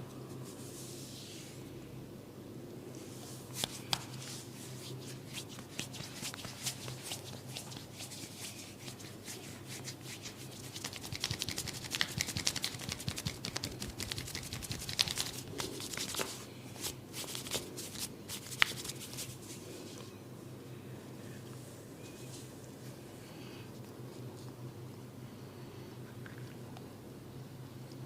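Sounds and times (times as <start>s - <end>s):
hands rubbing and patting skin: 3.1s - 20.1s.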